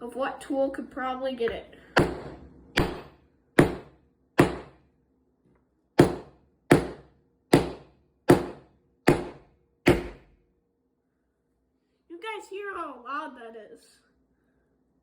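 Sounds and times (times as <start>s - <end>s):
meat mallet hammering a pit: 2.0s - 4.8s, 6.0s - 10.4s.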